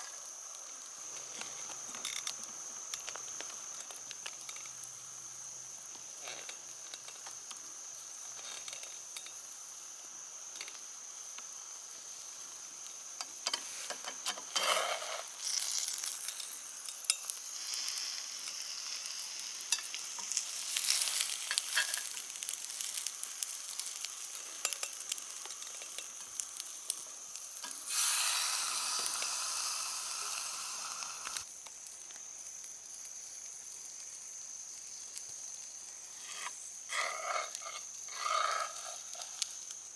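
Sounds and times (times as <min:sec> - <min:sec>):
food sizzling in a pan: 0:00.0 - 0:39.9
stirring scrape: 0:13.6 - 0:15.3, 0:36.2 - 0:39.5.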